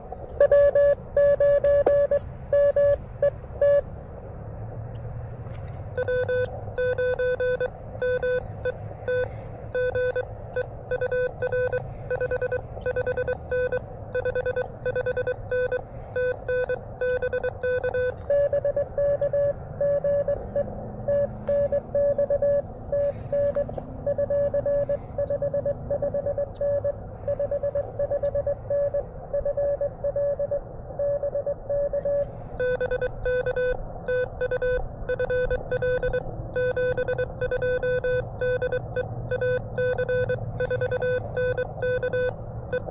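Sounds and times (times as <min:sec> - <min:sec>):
lower harsh morse code tone: 0:00.0 - 0:03.9, 0:05.9 - 0:42.9
receiver hiss: 0:00.0 - 0:04.4, 0:05.8 - 0:42.9
higher morse code tone: 0:00.4 - 0:03.9, 0:06.0 - 0:42.9.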